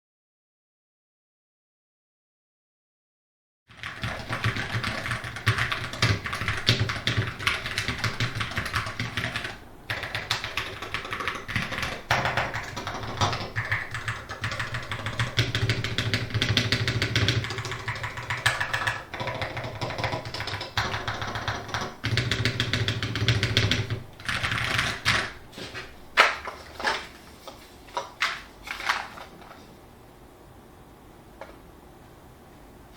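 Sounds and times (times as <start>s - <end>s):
fast keyboard typing: 3.7s - 25.4s.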